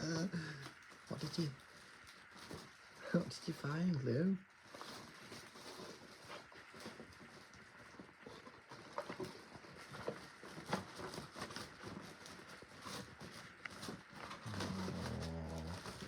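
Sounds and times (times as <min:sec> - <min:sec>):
dog grumbling groan: 0:14.3 - 0:16.0.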